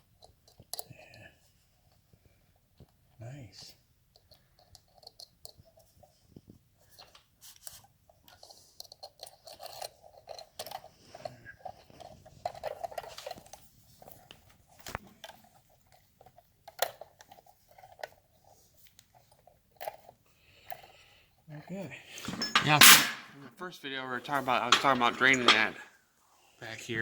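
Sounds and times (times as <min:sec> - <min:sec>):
hand tools clicking and scraping metal: 0:08.3 - 0:13.6, 0:22.2 - 0:23.5, 0:24.2 - 0:25.9.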